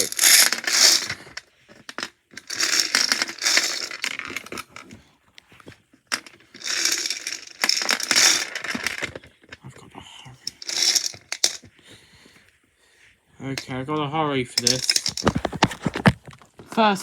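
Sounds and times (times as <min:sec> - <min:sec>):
lottery balls rattling and clicking: 0:00.0 - 0:05.0, 0:05.6 - 0:09.6, 0:10.4 - 0:11.7, 0:13.5 - 0:16.1.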